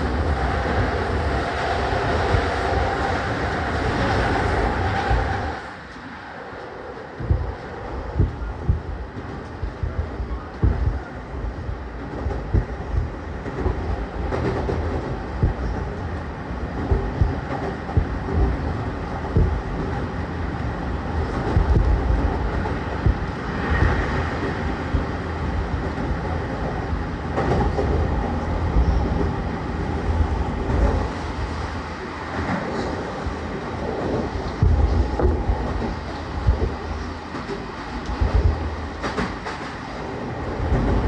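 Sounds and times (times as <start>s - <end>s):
train wheel and rail rumble: 0.0s - 41.0s
knocks over rail joints: 7.2s - 16.1s, 16.8s - 20.0s, 21.1s - 26.2s.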